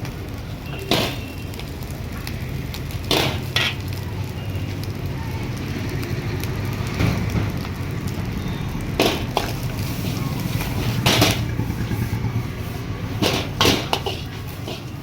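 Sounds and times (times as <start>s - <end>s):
gas burner roaring: 0.0s - 15.0s
spatula clanking on wok: 13.2s - 15.0s.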